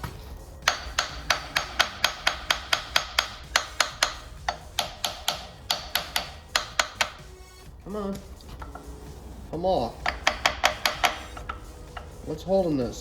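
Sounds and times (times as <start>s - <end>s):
hammer striking metal part: 0.6s - 7.3s, 9.8s - 12.2s.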